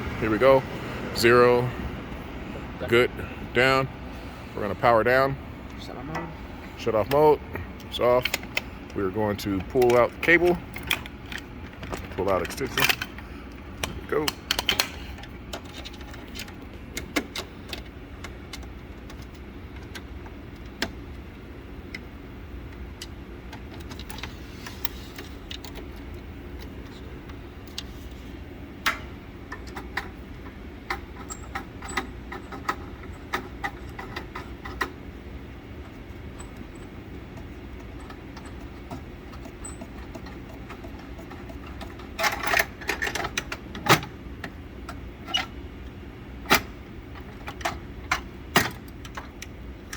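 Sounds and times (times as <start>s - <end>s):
steady low hum: 0.0s - 49.9s
projector casing clicks and rattles: 7.0s - 21.0s.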